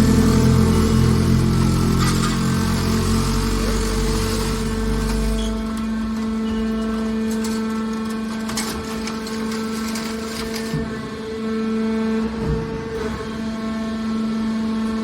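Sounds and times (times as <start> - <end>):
hydraulic power unit humming: 0.0 - 15.0.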